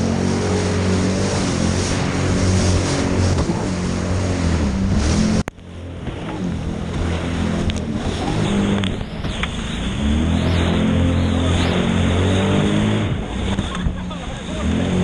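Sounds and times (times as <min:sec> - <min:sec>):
personal watercraft engine running: 0:00.0 - 0:15.0.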